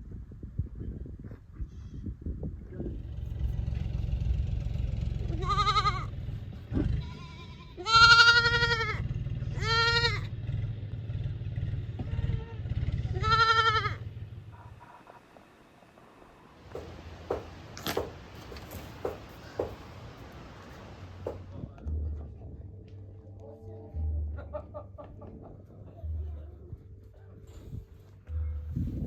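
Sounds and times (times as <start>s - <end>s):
low rumble: 2.1s - 14.9s, 19.9s - 29.0s
livestock bleating: 5.3s - 10.3s, 12.0s - 14.1s.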